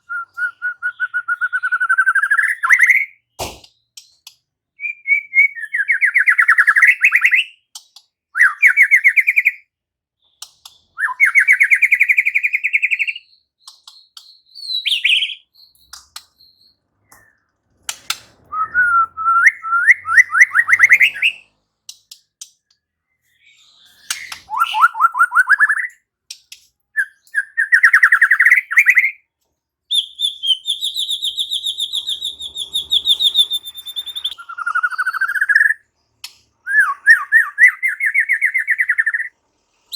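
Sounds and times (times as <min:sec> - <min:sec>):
bird song upward sweeping notes: 0:14.4 - 0:21.6, 0:29.9 - 0:39.3
high bird trill: 0:18.5 - 0:21.5, 0:29.9 - 0:35.8.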